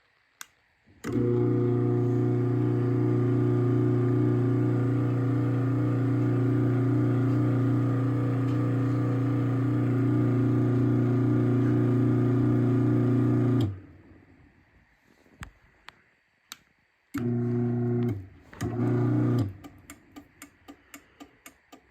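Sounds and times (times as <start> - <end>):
garage door opener motor humming: 1.0 - 14.0, 17.2 - 19.6.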